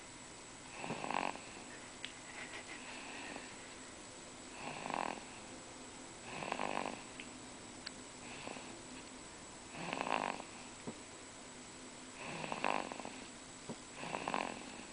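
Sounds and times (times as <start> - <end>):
baby snoring: 0.7 - 1.6, 4.5 - 5.4, 6.2 - 7.1, 8.3 - 8.7, 9.7 - 10.7, 12.2 - 13.3, 13.9 - 14.9.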